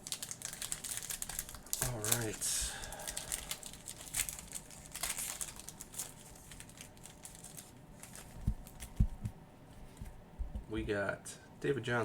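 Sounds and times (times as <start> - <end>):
wrapper crinkling and tearing: 0.0 - 9.0
soft thumps: 8.3 - 11.0.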